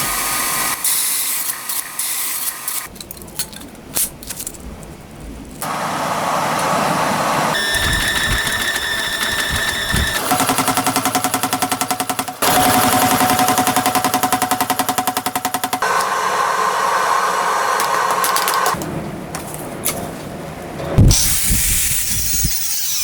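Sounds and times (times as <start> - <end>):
metalworking machinery running: 0.0 - 3.0, 5.6 - 20.0
machine whine: 5.6 - 18.8
fast even mechanical pounding: 7.5 - 15.9.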